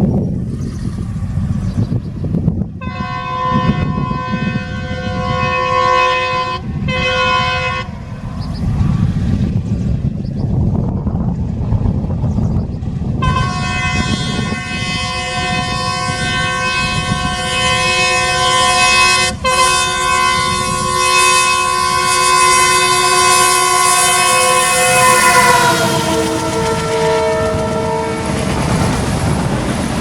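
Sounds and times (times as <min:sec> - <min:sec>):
locomotive air horn blasts: 0:02.8 - 0:08.2, 0:13.2 - 0:28.8
low rumble: 0:06.6 - 0:13.4.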